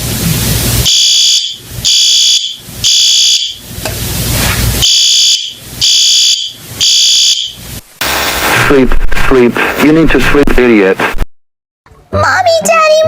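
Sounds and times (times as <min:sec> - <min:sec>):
fire alarm beeps: 0:00.9 - 0:03.6, 0:04.8 - 0:07.6
loud noisy rush: 0:08.0 - 0:11.2.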